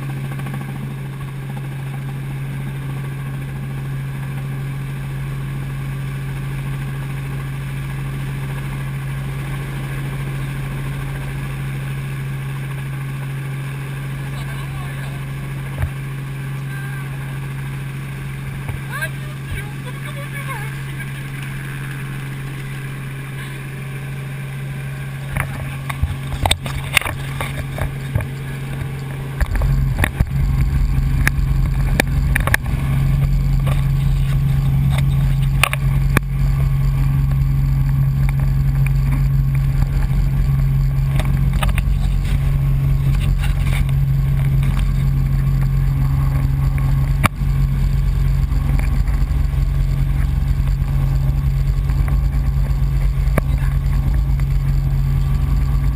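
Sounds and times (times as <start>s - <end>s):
helicopter rotor and engine drone: 0.0s - 55.9s
low rumble: 20.6s - 55.9s.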